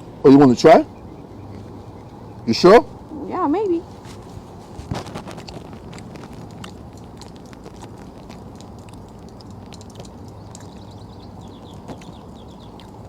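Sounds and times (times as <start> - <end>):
low background hum: 0.0 - 13.0
person chewing food: 4.1 - 13.0.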